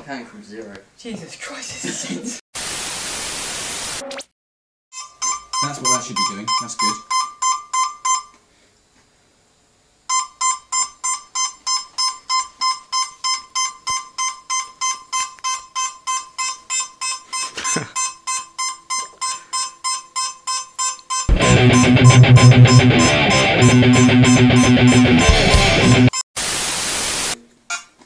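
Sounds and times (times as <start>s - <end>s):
electronic keyboard repeated notes: 21.2s - 26.1s.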